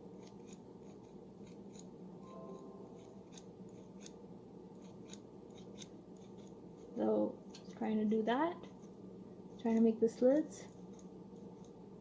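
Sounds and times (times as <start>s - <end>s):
scissors snipping dough: 0.0s - 1.9s, 9.6s - 11.8s
low room hum: 0.0s - 12.0s.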